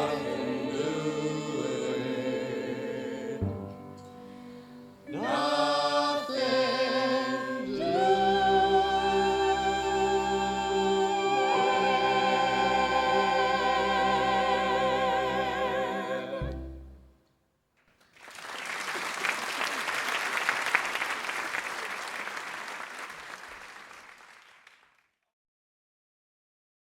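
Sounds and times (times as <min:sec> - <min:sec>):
audience applauding: 0:18.0 - 0:25.0.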